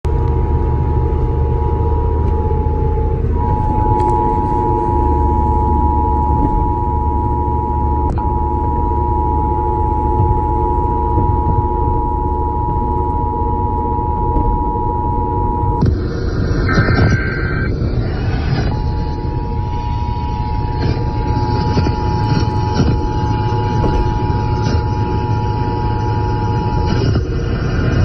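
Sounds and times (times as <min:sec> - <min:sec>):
car road rumble: 0:00.0 - 0:28.0
two-tone alert over radio: 0:03.2 - 0:08.7.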